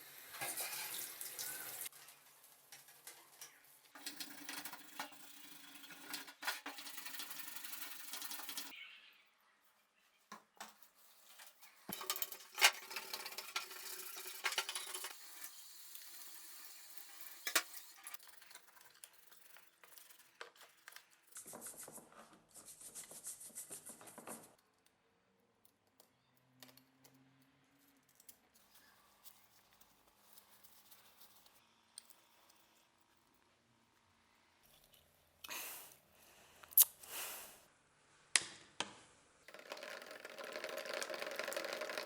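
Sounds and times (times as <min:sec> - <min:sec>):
small metal clinks and knocks: 0:25.6 - 0:32.8.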